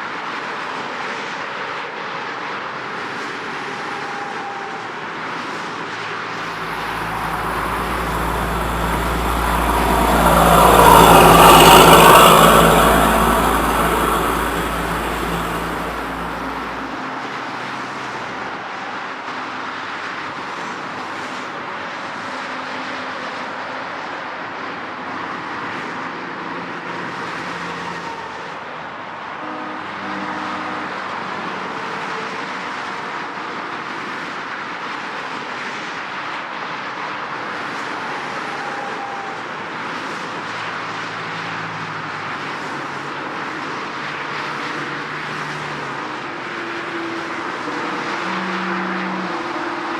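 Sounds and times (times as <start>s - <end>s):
heavy road traffic: 0.0s - 49.9s
cars passing: 4.4s - 21.0s, 39.4s - 49.9s.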